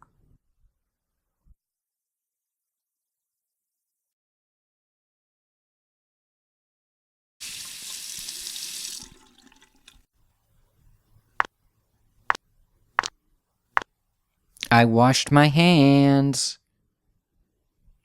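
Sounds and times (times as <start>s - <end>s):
sink faucet running: 7.4s - 10.0s.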